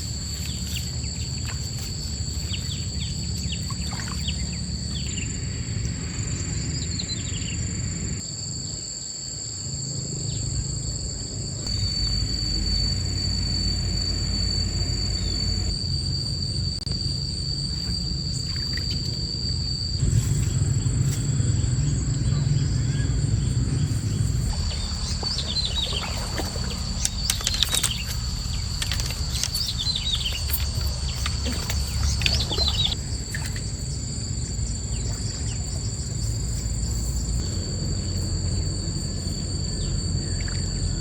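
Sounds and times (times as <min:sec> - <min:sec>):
low steady rumble: 0:00.0 - 0:08.3, 0:09.8 - 0:41.0
high insect drone: 0:00.0 - 0:41.0
bird chirping: 0:20.0 - 0:33.5.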